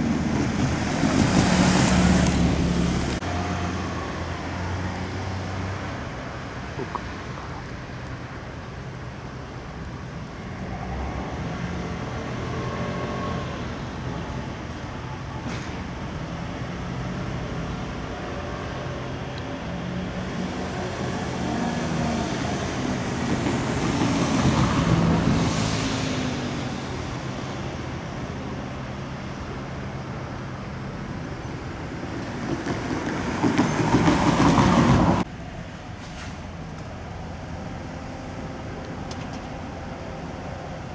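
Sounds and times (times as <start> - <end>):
train running with low hum: 0.0 - 40.9.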